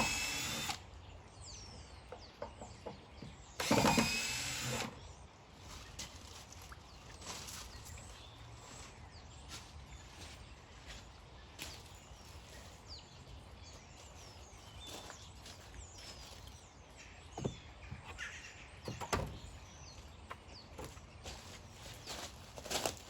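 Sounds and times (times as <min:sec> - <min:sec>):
outdoor background noise: 0:00.0 - 0:23.0
faint bird chirps: 0:05.7 - 0:21.5.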